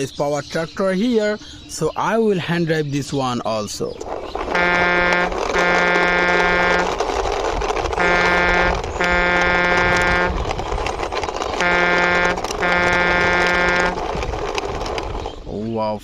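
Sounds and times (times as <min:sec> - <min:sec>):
truck horn honking: 0:04.5 - 0:07.0, 0:07.9 - 0:10.5, 0:11.5 - 0:14.2.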